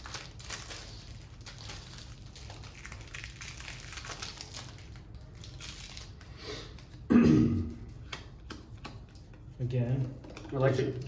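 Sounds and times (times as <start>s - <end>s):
cards and plastic wrapping rustling: 0.0s - 7.0s.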